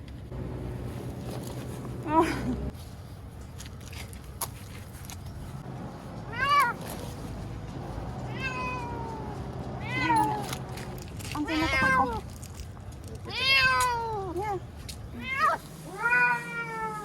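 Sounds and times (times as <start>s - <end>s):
cat meowing: 8.3s - 10.4s.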